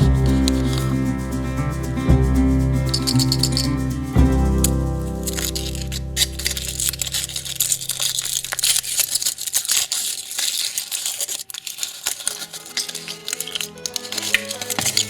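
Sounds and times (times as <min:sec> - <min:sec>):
background music: 0:00.0 - 0:09.0, 0:12.2 - 0:15.0
foil wrapper crinkling and tearing: 0:04.7 - 0:15.0.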